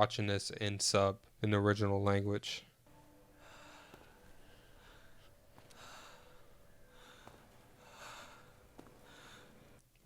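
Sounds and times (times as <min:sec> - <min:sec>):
faint breathing: 0:03.0 - 0:09.8.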